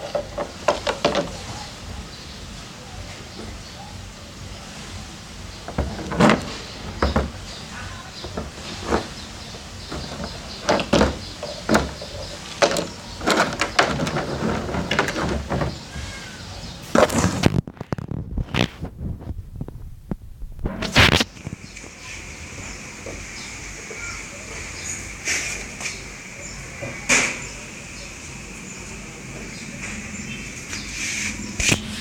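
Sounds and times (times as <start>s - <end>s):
knocks and clattering: 0.0s - 1.5s, 5.6s - 7.6s, 8.2s - 16.0s.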